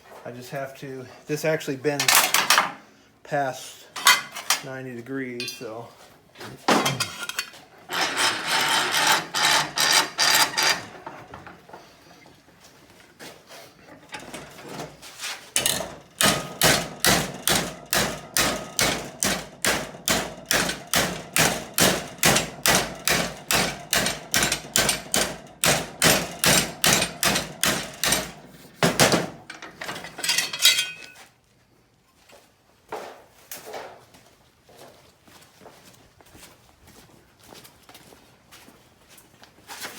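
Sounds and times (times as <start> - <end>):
hammer blows on sheet metal: 15.6 - 29.4.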